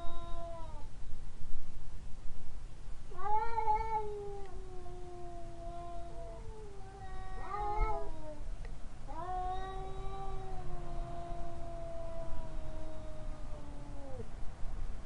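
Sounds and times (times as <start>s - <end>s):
cat meowing: 3.1s - 8.4s, 9.1s - 14.3s.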